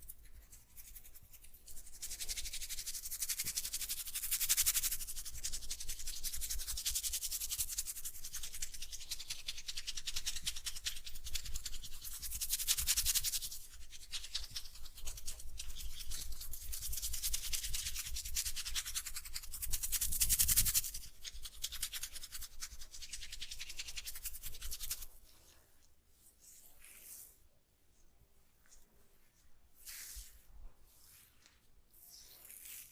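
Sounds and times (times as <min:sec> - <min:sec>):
hands rubbing hair and scalp: 0:11.5 - 0:32.9.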